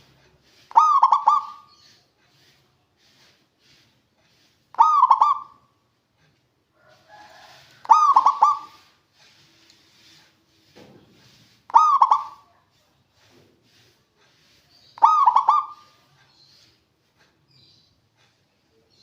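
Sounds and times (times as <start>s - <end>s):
dove cooing: 0.7s - 1.8s, 4.8s - 5.7s, 7.8s - 8.9s, 11.7s - 12.6s, 15.0s - 16.0s.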